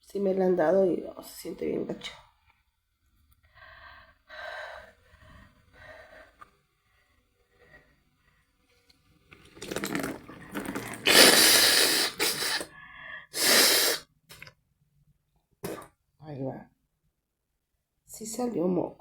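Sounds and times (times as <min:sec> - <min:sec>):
person blowing out nose: 0:09.7 - 0:12.7, 0:13.3 - 0:14.1.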